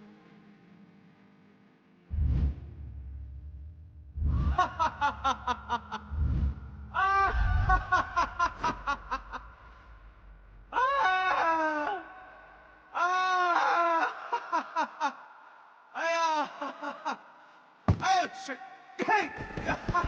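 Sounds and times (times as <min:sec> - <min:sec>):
person cackling laugh: 0:04.4 - 0:06.1, 0:07.0 - 0:09.8.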